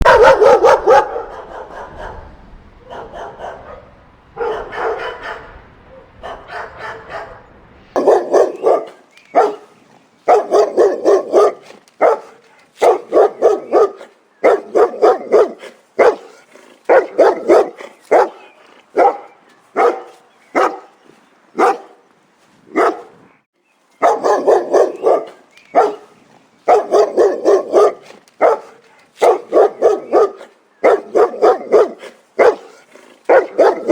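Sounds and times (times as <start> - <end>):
dogs barking: 0.0 - 22.1, 22.7 - 23.2, 24.0 - 33.9.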